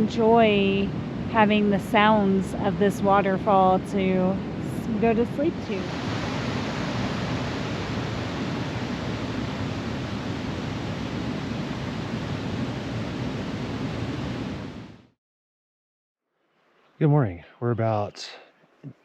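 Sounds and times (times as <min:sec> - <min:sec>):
waterfall roaring: 0:01.4 - 0:14.5.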